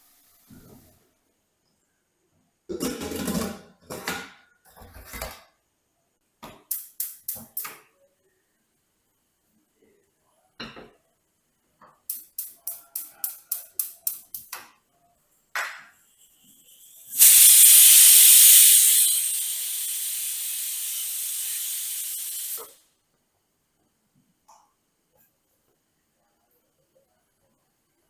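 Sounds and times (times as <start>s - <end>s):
steam hissing: 16.0s - 22.8s.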